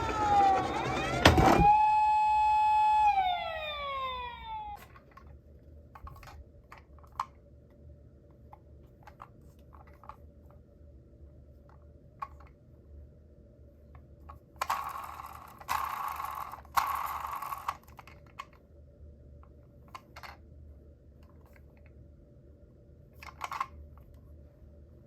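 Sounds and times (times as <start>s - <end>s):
toy cars rattling: 0.0s - 1.8s, 14.6s - 18.6s, 23.2s - 23.8s.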